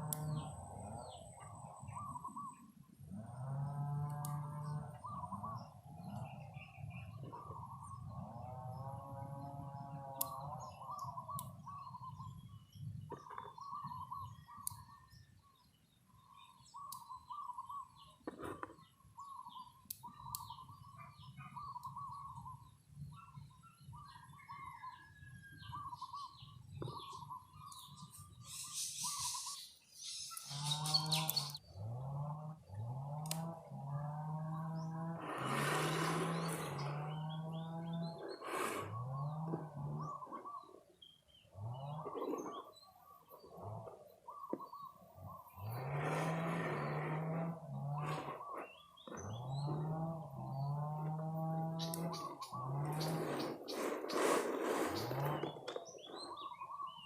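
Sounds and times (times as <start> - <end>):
farm animal calling: 0.0 - 12.1, 25.6 - 57.0
birds calling: 0.0 - 57.0.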